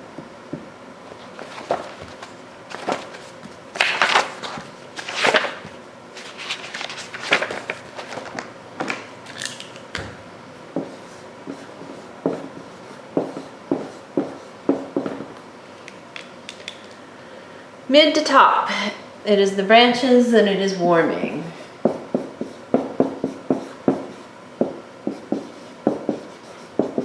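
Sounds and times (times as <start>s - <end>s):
small objects clicking and tapping: 9.3s - 10.1s.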